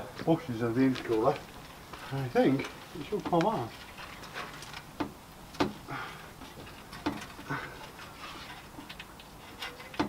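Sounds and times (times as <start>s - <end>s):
crash bar knocking and rattling: 6.6s - 7.5s.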